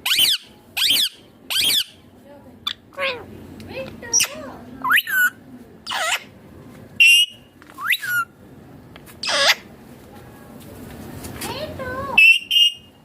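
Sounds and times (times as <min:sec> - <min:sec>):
parakeet shrill calls: 0:00.0 - 0:02.0, 0:04.1 - 0:06.3, 0:07.0 - 0:08.3, 0:09.2 - 0:09.6.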